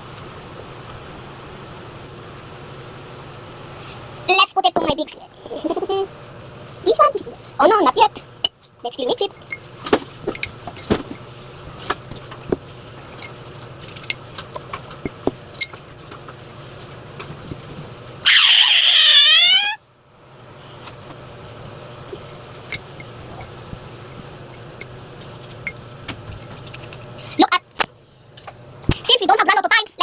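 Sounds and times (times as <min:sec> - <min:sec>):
steady low hum: 0:00.0 - 0:30.0
high squeal gliding down: 0:18.2 - 0:19.8.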